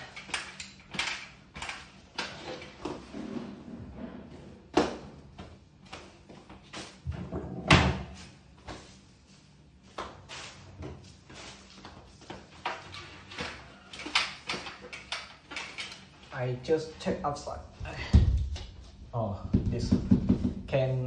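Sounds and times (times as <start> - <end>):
hard objects knocking and clattering: 19.4 - 20.7.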